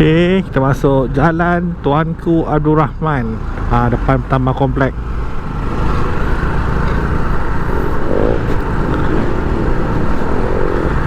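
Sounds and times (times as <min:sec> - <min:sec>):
road noise: 0:00.0 - 0:11.0
motorcycle engine: 0:03.4 - 0:11.0
wind rumble on microphone: 0:07.4 - 0:11.0.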